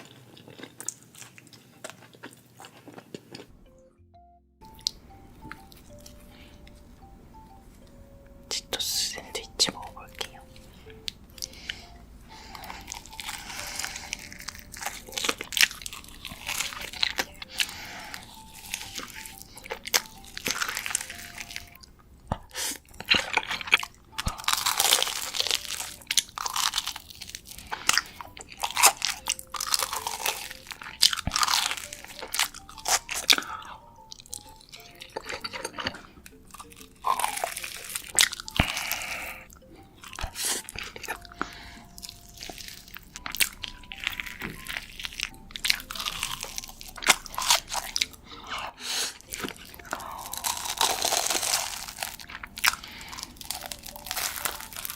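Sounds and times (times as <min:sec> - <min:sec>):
crunchy bites and chewing: 0:10.8 - 0:54.9.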